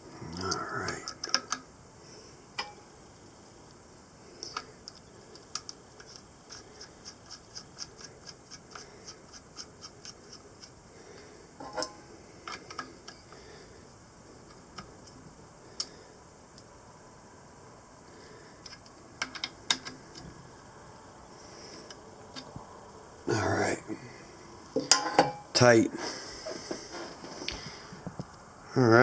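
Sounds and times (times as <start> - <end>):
screws clicking under hand key: 4.4 - 10.8.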